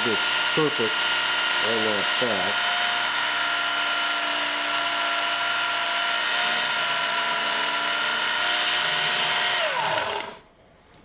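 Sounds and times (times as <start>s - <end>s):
blade grinding on belt: 0.0s - 6.8s
belt sharpener motor whine: 0.0s - 10.4s.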